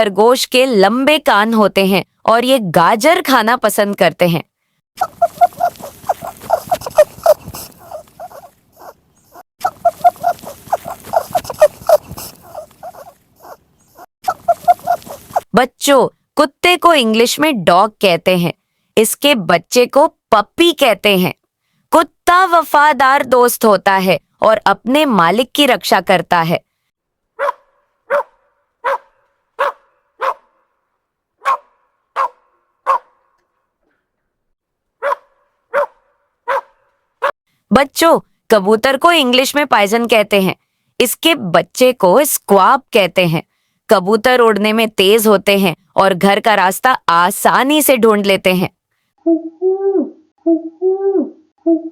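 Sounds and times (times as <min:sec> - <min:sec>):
rabbit making rapid calls: 0:05.0 - 0:15.5
dog barking: 0:05.2 - 0:09.4, 0:10.0 - 0:15.4, 0:27.4 - 0:30.8, 0:31.4 - 0:33.4, 0:35.0 - 0:37.3.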